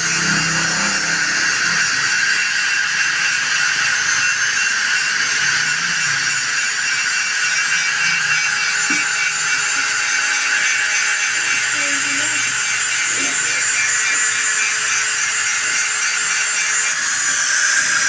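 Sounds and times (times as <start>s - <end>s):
power tool high-pitched whine: 0.0s - 18.0s.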